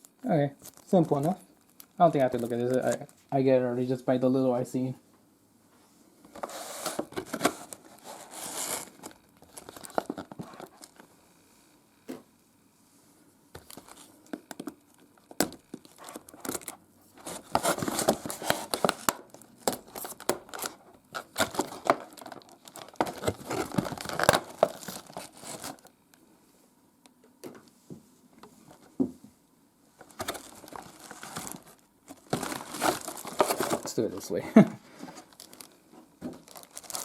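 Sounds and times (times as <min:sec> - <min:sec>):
packaging crinkling and rustling: 0:00.6 - 0:03.4, 0:06.3 - 0:11.1, 0:13.6 - 0:25.9, 0:30.0 - 0:34.4, 0:35.0 - 0:37.0.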